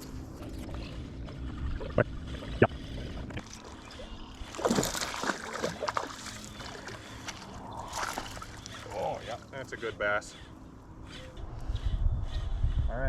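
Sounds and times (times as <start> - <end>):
water splashing and sloshing: 0.0 - 11.1
low hum: 0.0 - 13.0.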